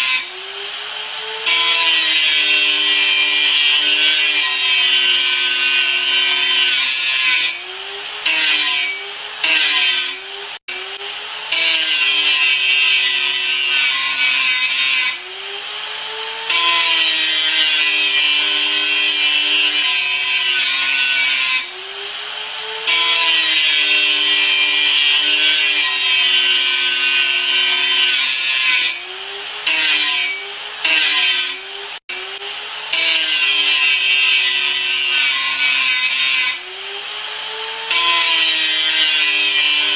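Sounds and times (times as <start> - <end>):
electric grinder grinding: 0.0 - 39.9.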